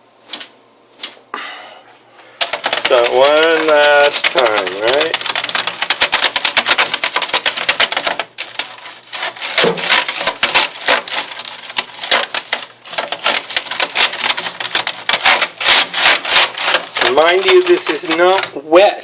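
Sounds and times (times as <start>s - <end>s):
keyboard keys clicking: 2.4s - 8.7s
paintbrush scrubbing keyboard: 2.4s - 18.6s.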